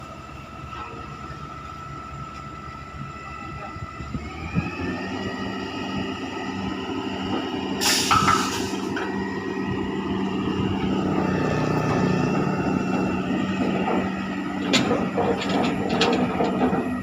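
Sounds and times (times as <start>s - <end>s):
drilling rig humming and whining: 0.0s - 17.0s
loud burst of hissing: 7.8s - 8.9s.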